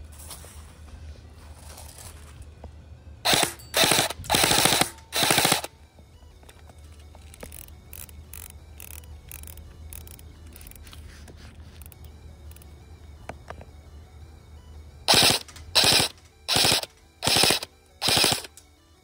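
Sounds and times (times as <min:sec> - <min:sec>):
airsoft gun firing bursts: 0:03.3 - 0:05.7, 0:15.1 - 0:18.6.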